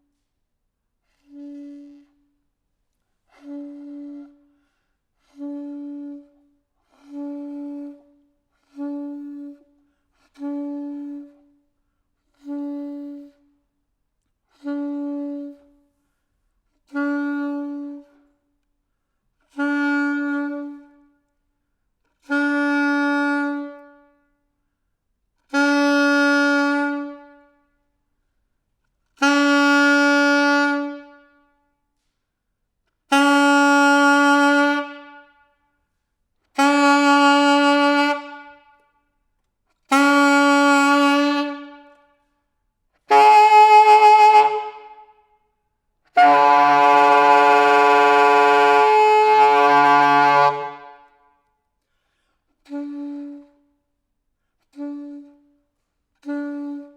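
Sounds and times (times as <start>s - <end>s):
saxophone held notes: 43.1s - 45.1s, 46.1s - 51.2s.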